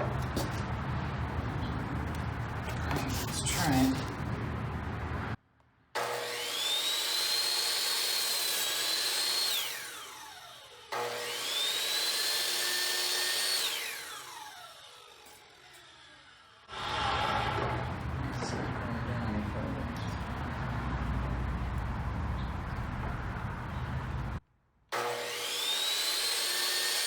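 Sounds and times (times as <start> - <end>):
mitre saw motor whine: 6.0 - 18.1, 25.0 - 27.0.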